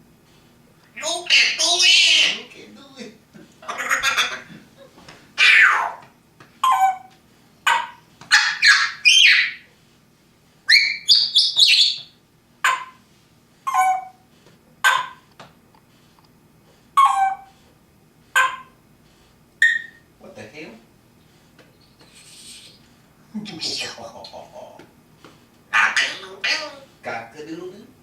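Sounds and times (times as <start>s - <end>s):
parrot squawks and whistled chirps: 1.0s - 2.4s, 5.4s - 6.0s, 6.6s - 7.1s, 7.7s - 9.7s, 10.7s - 13.0s, 13.7s - 14.2s, 14.8s - 15.2s, 17.0s - 17.5s, 18.4s - 18.8s, 19.6s - 20.0s.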